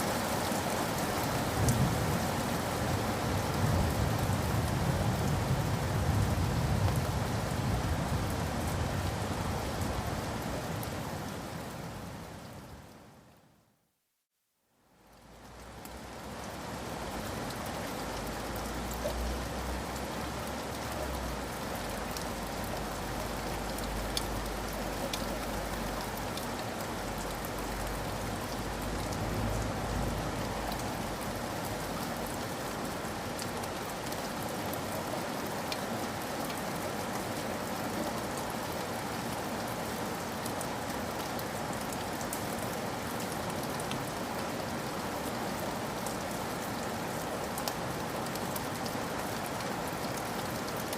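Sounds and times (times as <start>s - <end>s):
heavy rain falling: 0.0s - 13.2s, 14.9s - 50.9s.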